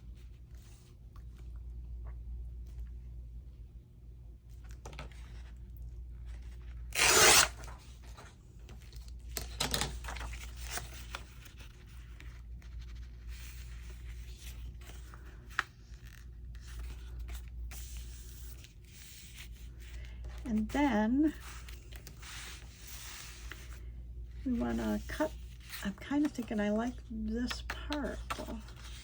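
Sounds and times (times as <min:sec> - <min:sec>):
paper rustling: 0:06.3 - 0:20.7, 0:24.4 - 0:29.0
paper tearing: 0:06.8 - 0:07.8.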